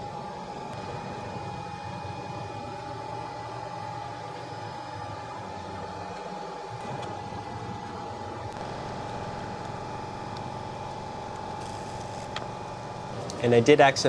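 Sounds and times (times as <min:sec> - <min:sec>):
fan-like hiss: 0:00.0 - 0:14.0
high whine: 0:06.6 - 0:14.0.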